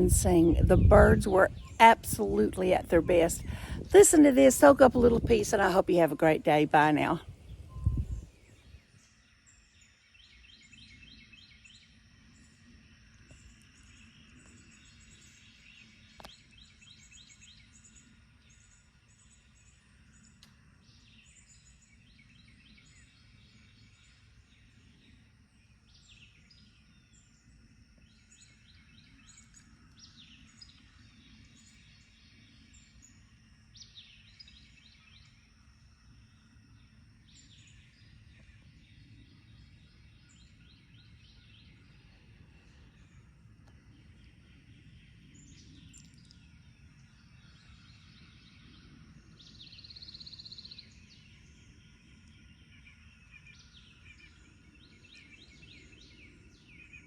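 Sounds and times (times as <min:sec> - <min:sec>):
low background rumble: 0:00.0 - 0:08.7
songbirds singing: 0:00.0 - 0:57.0.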